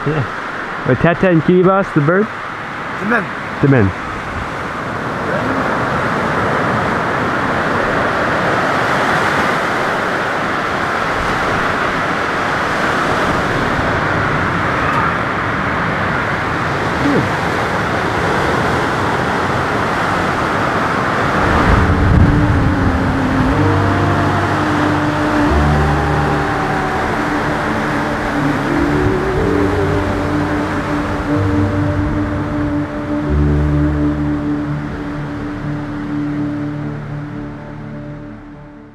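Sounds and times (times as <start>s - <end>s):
loud steady rushing noise: 0.0s - 38.9s
music: 21.4s - 38.9s.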